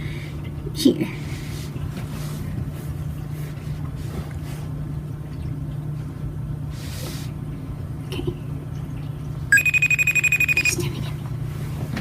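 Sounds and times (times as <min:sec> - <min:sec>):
steady low hum: 0:09.3 - 0:11.6.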